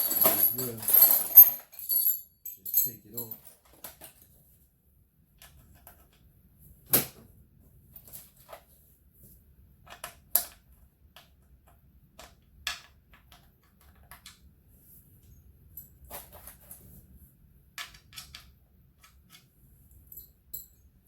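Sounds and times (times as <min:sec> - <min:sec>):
clicks and knocks of metal tools: 0:20.1 - 0:20.9.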